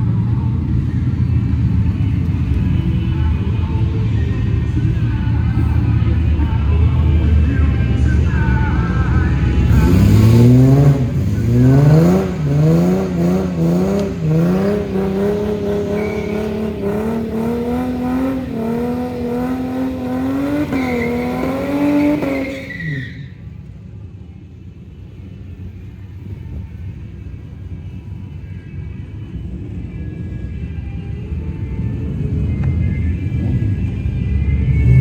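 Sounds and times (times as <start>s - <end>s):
car engine at full throttle: 0.0s - 23.8s.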